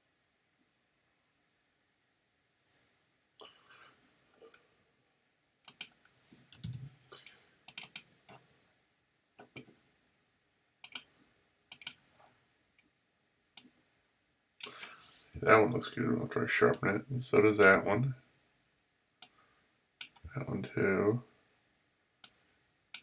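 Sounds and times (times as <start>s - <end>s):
mouse and keyboard clicks: 5.7s - 6.9s, 7.7s - 8.1s, 10.8s - 11.1s, 11.7s - 12.0s, 20.0s - 20.3s.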